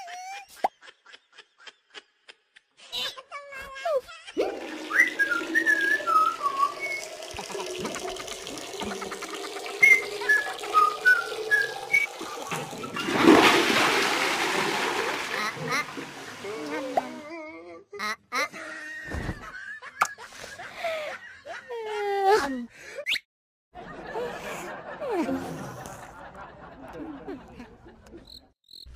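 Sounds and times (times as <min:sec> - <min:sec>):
short whistled notes: 0:09.8 - 0:12.2.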